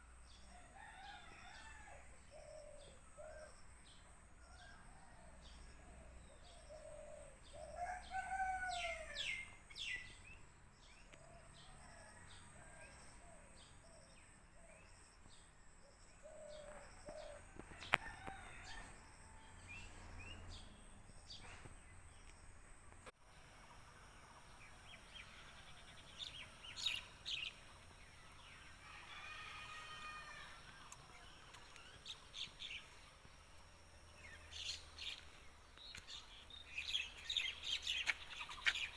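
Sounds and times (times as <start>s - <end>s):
rooster crowing: 0.6s - 2.1s, 7.8s - 9.4s, 17.6s - 20.0s, 28.8s - 30.6s
small birds chirping: 30.6s - 38.9s.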